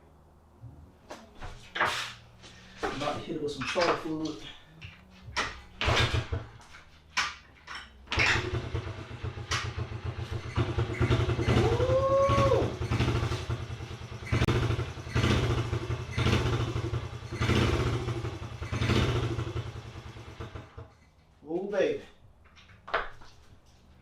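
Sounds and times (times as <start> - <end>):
small engine revving roughly: 8.2 - 20.8
rising and falling tone: 11.4 - 12.8.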